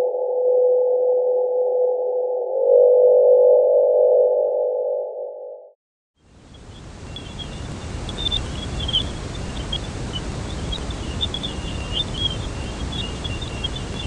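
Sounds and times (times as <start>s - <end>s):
low rumbling noise: 6.2s - 14.0s
high chirps and crackles: 6.3s - 14.0s.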